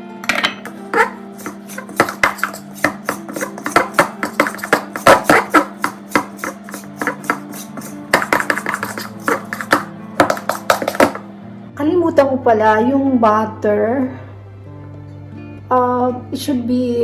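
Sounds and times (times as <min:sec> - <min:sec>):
spoon knocking mixing bowl: 0:01.4 - 0:11.2
plucked guitar music: 0:12.4 - 0:17.0.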